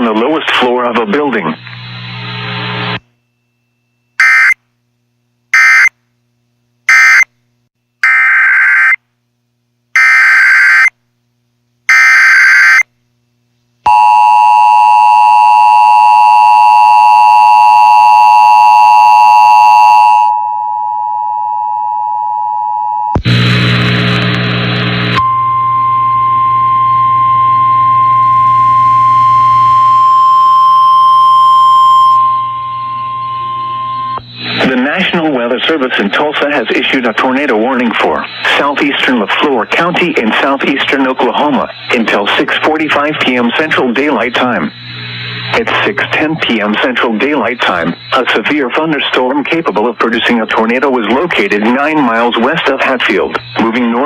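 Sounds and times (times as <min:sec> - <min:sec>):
radio hiss: 0:00.0 - 0:03.0, 0:23.2 - 0:25.2, 0:34.2 - 0:54.0
burst of static: 0:23.2 - 0:25.2, 0:34.2 - 0:54.0
screeching data bursts: 0:29.8 - 0:54.0.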